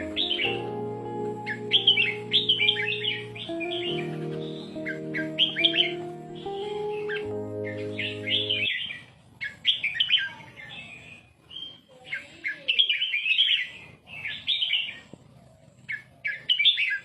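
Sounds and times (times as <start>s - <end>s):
bulbul chirpy warbling song: 0.0s - 9.9s.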